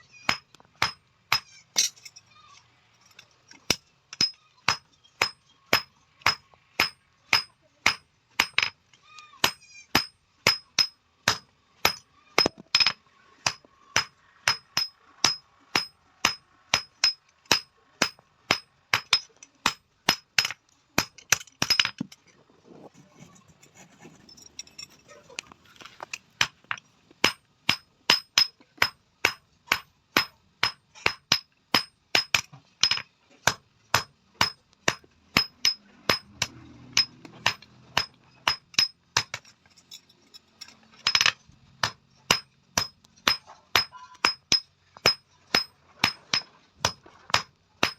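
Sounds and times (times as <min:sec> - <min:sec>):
hammer beating metal: 0:04.2 - 0:08.7, 0:09.4 - 0:21.9, 0:27.2 - 0:39.4, 0:41.1 - 0:47.9
scraping and handling noise: 0:20.6 - 0:27.2.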